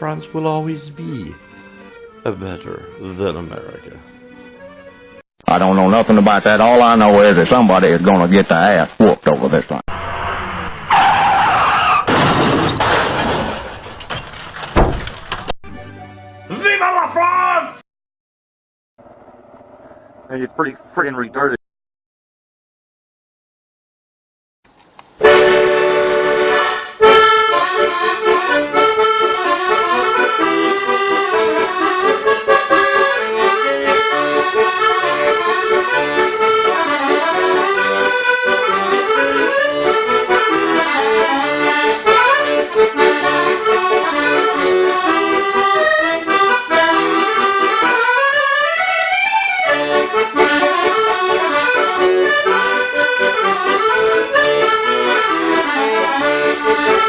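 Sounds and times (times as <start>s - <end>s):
lively accordion tune: 0.0s - 5.2s, 15.7s - 16.6s, 24.8s - 57.0s.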